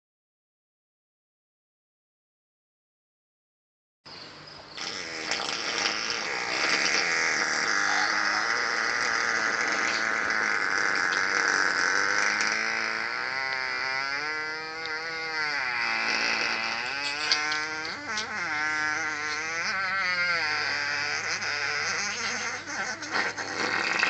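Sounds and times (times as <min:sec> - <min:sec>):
buzzing fart sound: 0:04.8 - 0:24.0.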